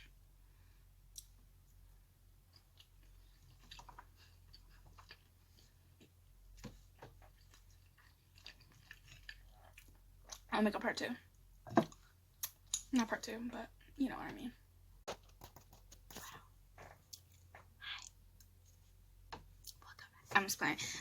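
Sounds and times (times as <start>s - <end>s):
faint chewing: 2.4s - 10.5s
food crunching: 2.5s - 5.8s, 7.1s - 10.5s.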